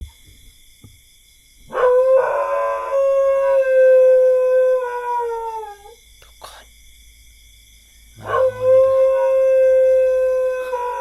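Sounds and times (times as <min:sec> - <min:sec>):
dog howling: 0:01.7 - 0:06.0, 0:08.2 - 0:11.0.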